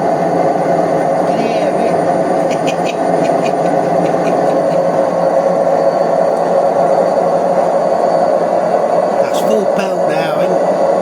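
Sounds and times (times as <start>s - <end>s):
washing machine spinning: 0.0s - 11.0s.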